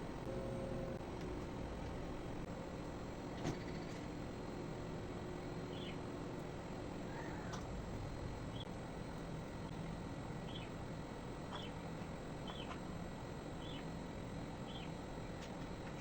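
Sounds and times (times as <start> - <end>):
small bird chirping: 5.7 - 6.0, 10.4 - 10.8, 11.5 - 11.8, 12.4 - 12.8, 13.6 - 13.9, 14.7 - 14.9.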